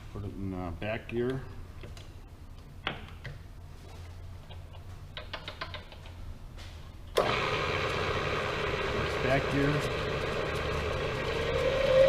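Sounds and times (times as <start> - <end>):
mill head clicks and ticks: 4.4 - 6.2
spindle motor whirring: 7.2 - 12.0.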